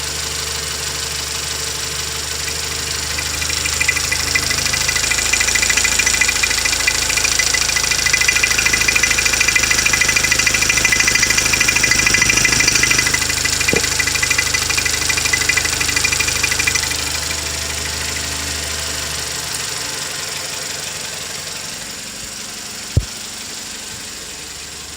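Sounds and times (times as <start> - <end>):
car engine knocking: 0.0 - 24.9
sharp click: 3.2 - 16.9.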